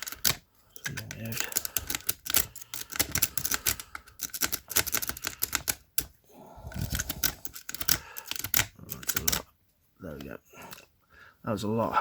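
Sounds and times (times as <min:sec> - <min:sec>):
lock pick raking lock: 0:00.0 - 0:06.1, 0:06.7 - 0:09.5.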